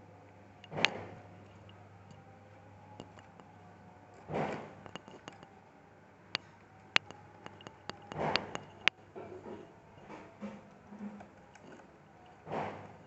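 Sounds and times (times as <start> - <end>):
plastic and metal clicks: 4.2 - 5.5, 6.4 - 9.0.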